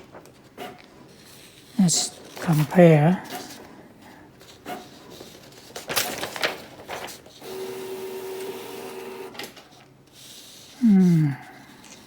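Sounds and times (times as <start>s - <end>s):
paper rustling: 0.0s - 7.8s, 9.4s - 12.0s
printer mechanism humming: 7.3s - 9.7s.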